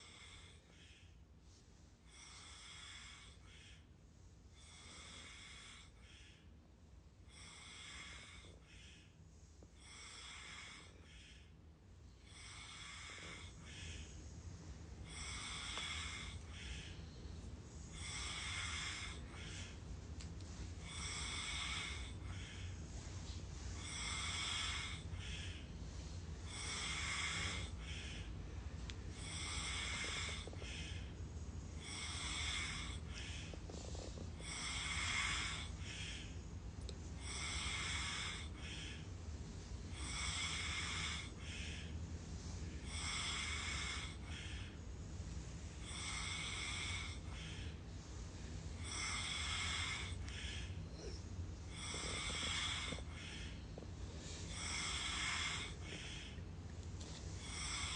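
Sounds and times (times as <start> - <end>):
person snoring: 2.1 - 3.6, 4.6 - 6.2, 7.3 - 8.8, 9.8 - 11.2, 12.2 - 14.0, 15.0 - 16.9, 17.9 - 19.7, 20.8 - 22.6, 23.8 - 25.6, 26.5 - 28.2, 29.2 - 31.1, 31.8 - 36.2, 37.2 - 39.0, 40.0 - 41.8, 42.8 - 44.7, 45.8 - 47.7, 48.8 - 53.6, 54.5 - 56.3, 57.4 - 57.9.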